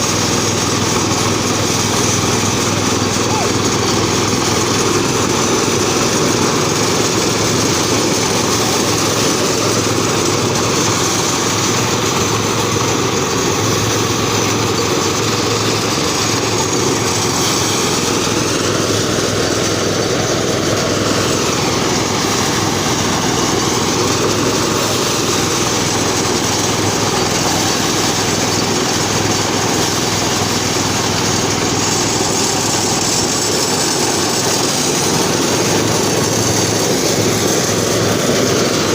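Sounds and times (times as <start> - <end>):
small engine running: 0.0 - 38.9.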